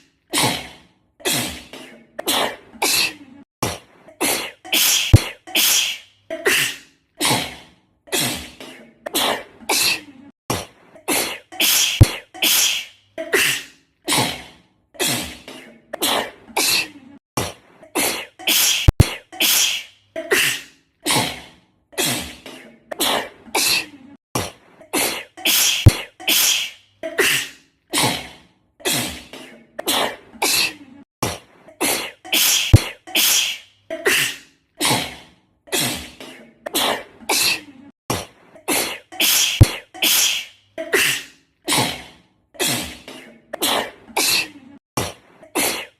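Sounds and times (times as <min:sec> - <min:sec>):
girl sneezing: 0:04.2 - 0:07.5, 0:11.1 - 0:14.3, 0:18.0 - 0:21.3, 0:24.9 - 0:28.2, 0:31.8 - 0:35.0, 0:38.7 - 0:41.9, 0:45.6 - 0:45.9.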